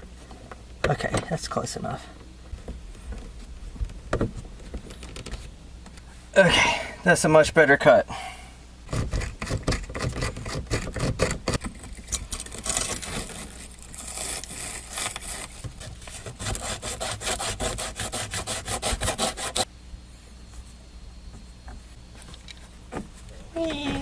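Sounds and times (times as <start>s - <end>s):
hacksaw sawing through pipe: 8.9s - 11.6s, 12.7s - 19.7s.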